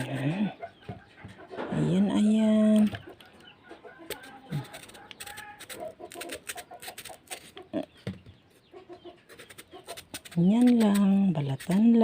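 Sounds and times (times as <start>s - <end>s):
chickens clucking: 0.0s - 12.0s
small clicks and scrapes: 2.7s - 7.7s, 9.3s - 12.0s.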